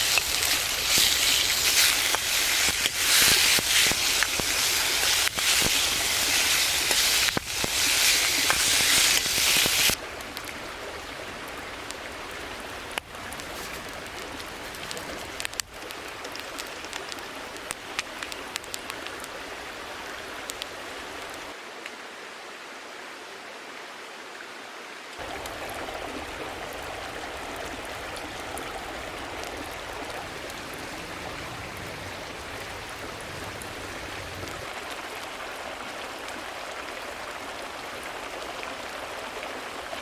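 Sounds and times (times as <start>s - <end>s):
heavy rain hissing: 0.0s - 15.6s, 25.2s - 36.4s
quiet wash of water: 0.0s - 21.6s, 25.2s - 40.0s.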